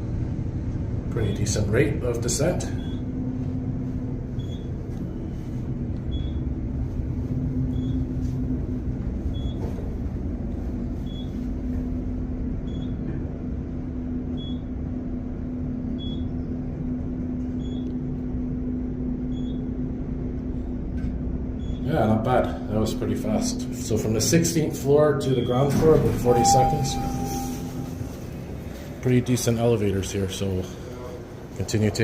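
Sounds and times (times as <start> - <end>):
elevator rumble and hum: 0.0 - 32.0
short high beep: 25.3 - 28.2.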